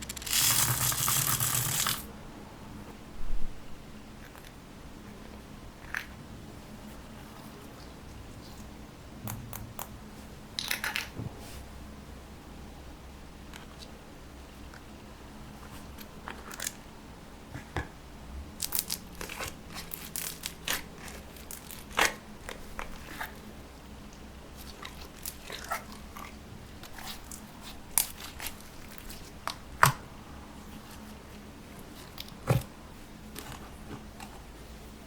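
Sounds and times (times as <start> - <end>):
slime squishing: 24.5 - 30.0.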